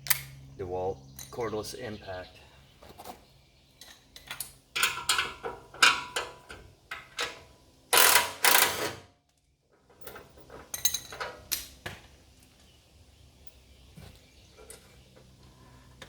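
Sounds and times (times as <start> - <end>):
impact driver bursts: 8.0 - 9.0.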